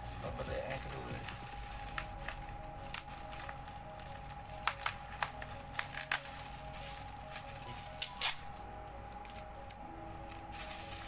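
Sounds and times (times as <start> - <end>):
bubble wrap crinkling and clicking: 0.0 - 11.0
soft background music: 0.0 - 11.0.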